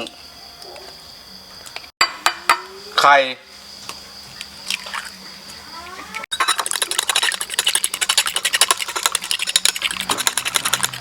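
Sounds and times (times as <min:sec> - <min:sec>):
utensil beating eggs in bowl: 0:06.4 - 0:11.0.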